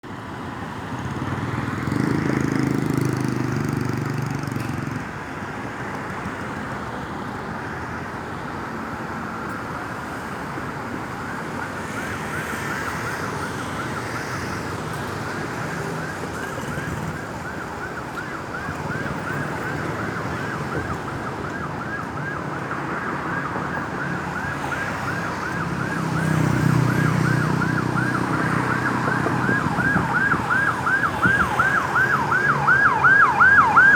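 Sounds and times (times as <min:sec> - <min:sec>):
traffic noise: 0:00.0 - 0:33.9
ambulance siren yelping: 0:10.9 - 0:33.9.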